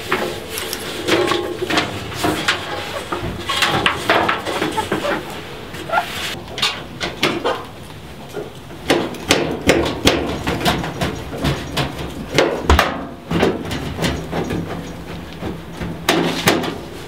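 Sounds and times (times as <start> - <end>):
knocks and clicks of dryer parts: 8.8 - 16.9.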